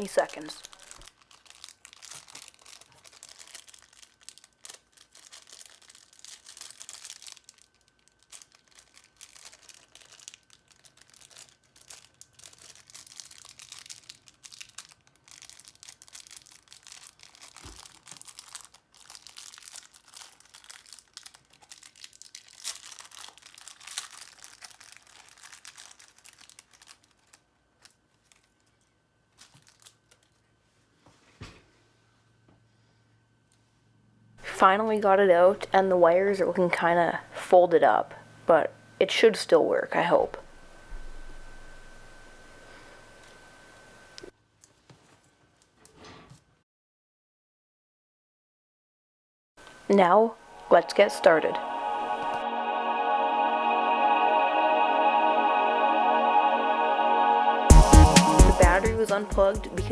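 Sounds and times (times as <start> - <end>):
plastic bag crinkling: 0.0 - 30.4.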